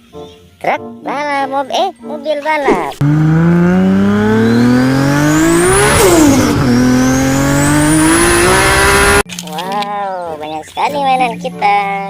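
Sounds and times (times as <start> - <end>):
race car engine revving: 3.0 - 9.2.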